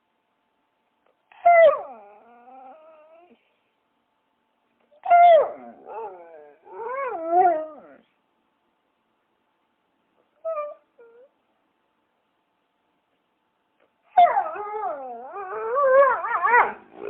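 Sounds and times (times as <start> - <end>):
dog whining howl: 1.3 - 3.4, 5.0 - 8.1, 10.4 - 11.3, 14.1 - 16.9
dog yelps: 5.0 - 8.0, 14.1 - 16.8.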